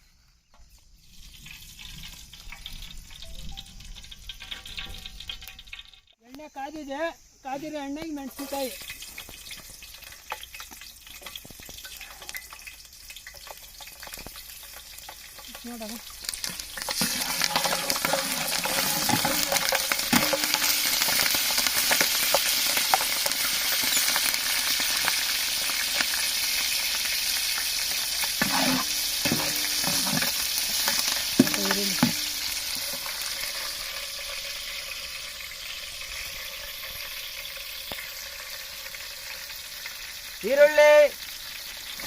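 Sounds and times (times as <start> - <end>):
chillies sizzling in hot oil: 0.6 - 42.0
ladle scraping a pot: 16.2 - 23.1, 28.2 - 33.2.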